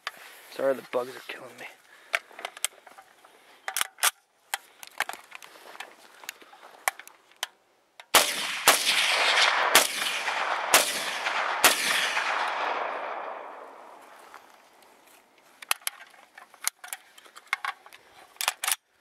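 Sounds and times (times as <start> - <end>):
rifle shots with rolling echo: 8.1 - 14.2.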